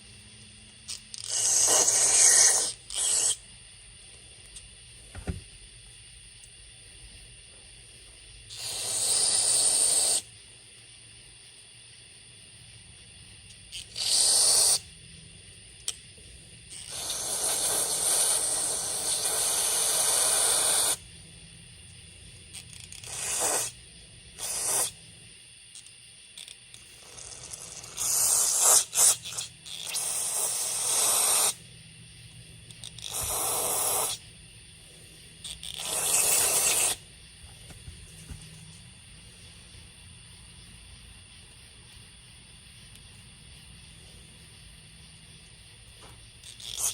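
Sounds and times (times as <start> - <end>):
aerosol spray hissing bursts: 1.3 - 3.4, 16.9 - 21.0, 23.1 - 23.7, 33.0 - 34.2, 35.6 - 37.0.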